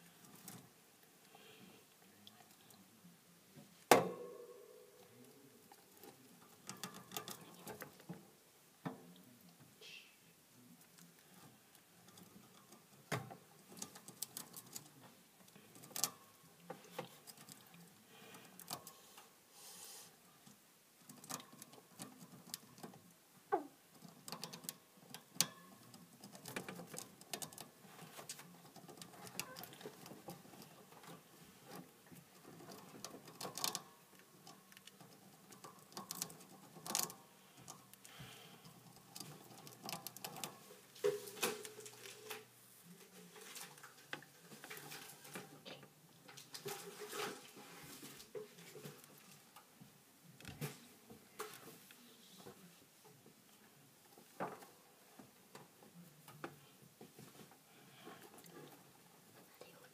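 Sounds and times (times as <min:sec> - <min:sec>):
hamster chewing and gnawing: 0:05.0 - 0:08.1, 0:10.8 - 0:19.2, 0:20.5 - 0:49.6.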